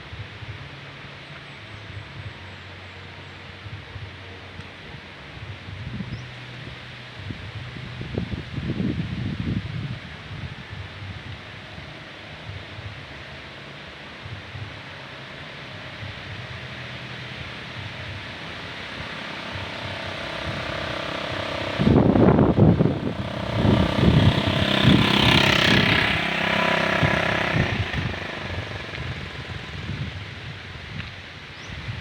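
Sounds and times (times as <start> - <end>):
leaves rustling in wind: 3.6 - 32.0
wind gust buffeting microphone: 17.7 - 32.0.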